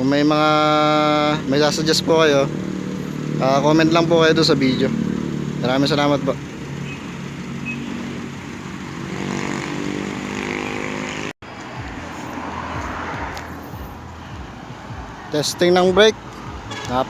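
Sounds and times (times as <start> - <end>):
van engine running: 0.5 - 9.2.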